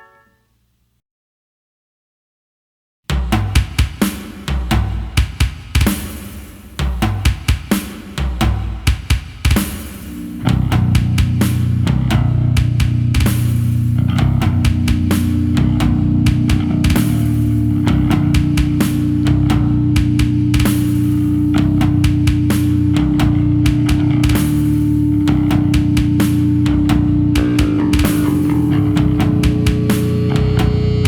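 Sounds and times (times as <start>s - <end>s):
heavy drum hits: 3.1s - 31.0s
metal band playing riff: 9.7s - 31.0s.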